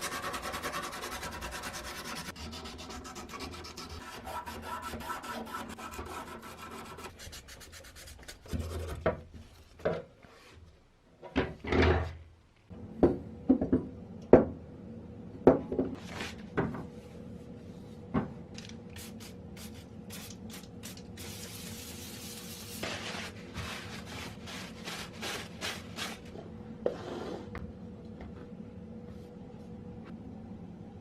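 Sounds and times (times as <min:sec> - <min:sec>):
faint steady hum: 0:12.2 - 0:31.0.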